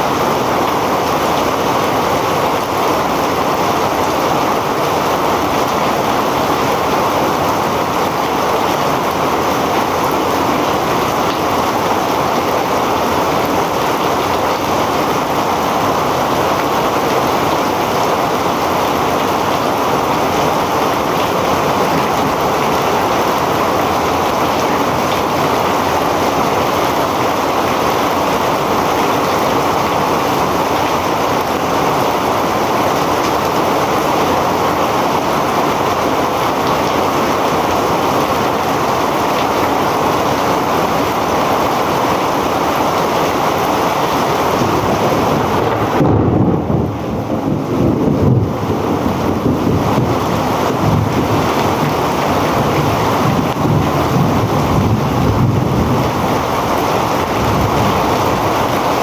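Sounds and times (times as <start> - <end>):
heavy rain pouring: 0.0 - 59.0.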